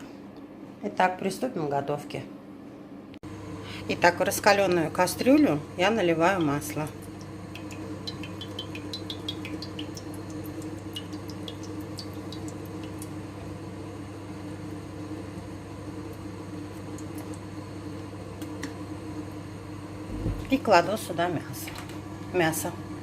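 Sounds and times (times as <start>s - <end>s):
steady low hum: 0.0s - 23.0s
oil crackling in a pot: 4.6s - 19.5s.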